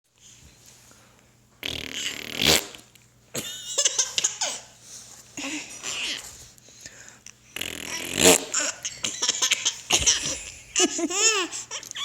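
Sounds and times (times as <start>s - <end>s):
fart: 1.6s - 2.8s, 7.6s - 8.6s
laughter: 10.0s - 11.5s.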